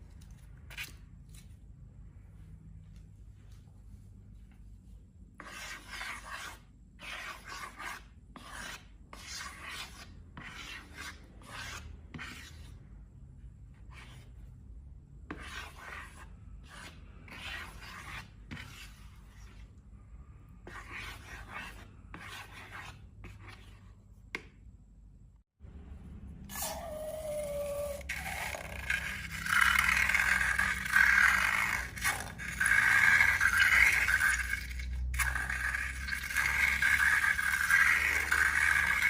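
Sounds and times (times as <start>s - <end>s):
scratchy rubbing strokes: 4.8s - 12.8s, 15.3s - 19.8s, 26.5s - 39.0s.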